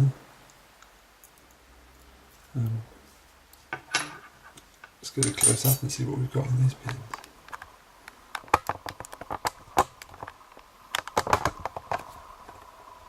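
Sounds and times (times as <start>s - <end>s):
small metal parts clicking and tapping: 3.5s - 5.8s.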